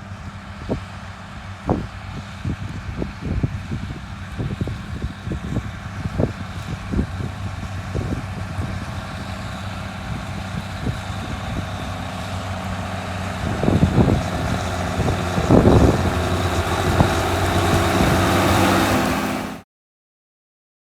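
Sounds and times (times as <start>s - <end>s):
tractor diesel engine running: 0.0s - 19.6s
engine knocks: 6.9s - 19.6s.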